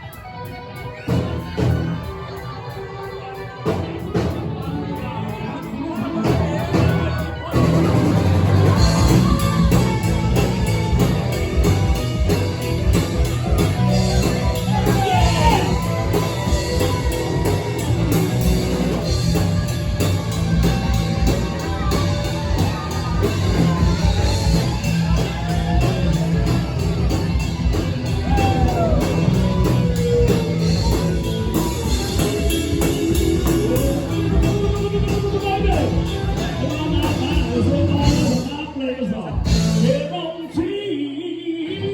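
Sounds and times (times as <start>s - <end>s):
live rock band playing: 0.0s - 40.9s
person singing and shouting: 3.7s - 41.9s.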